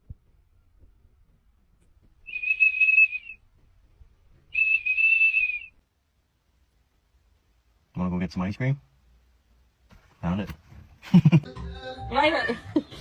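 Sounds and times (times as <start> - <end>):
high whistled notes: 2.2 - 3.4, 4.5 - 5.8.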